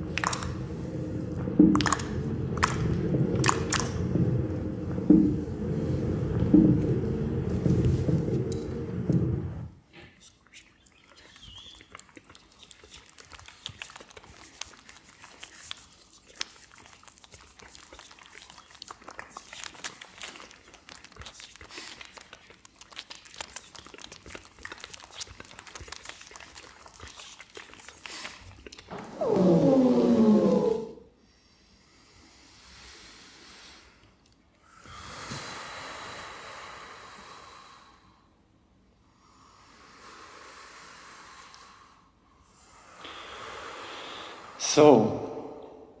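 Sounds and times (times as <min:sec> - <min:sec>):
small crackles and clicks: 0:00.0 - 0:09.3, 0:10.2 - 0:28.9
loud downward sliding pitches: 0:00.0 - 0:09.7.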